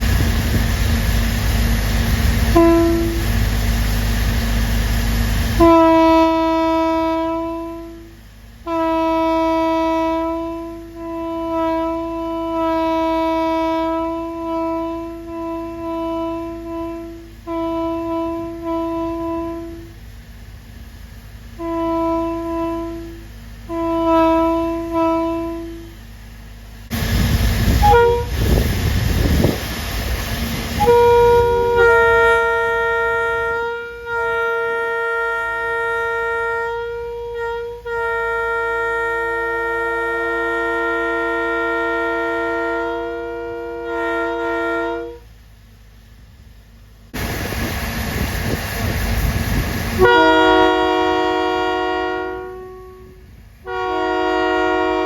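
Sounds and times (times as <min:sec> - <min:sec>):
loud rushing noise: 0:00.0 - 0:02.5, 0:26.9 - 0:30.9, 0:47.2 - 0:50.1
locomotive air horn blasts: 0:02.4 - 0:03.6, 0:05.4 - 0:20.1, 0:21.5 - 0:26.1, 0:27.6 - 0:28.8, 0:30.7 - 0:45.3, 0:49.9 - 0:55.0
horn at another pitch: 0:02.5 - 0:03.4, 0:05.5 - 0:08.1, 0:08.7 - 0:20.0, 0:21.6 - 0:25.9, 0:27.8 - 0:28.6, 0:30.8 - 0:45.2, 0:50.0 - 0:55.0.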